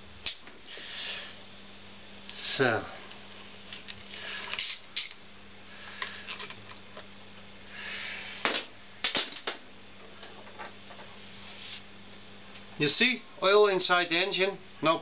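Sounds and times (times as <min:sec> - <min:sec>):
soft hiss: 0:10.9 - 0:14.0.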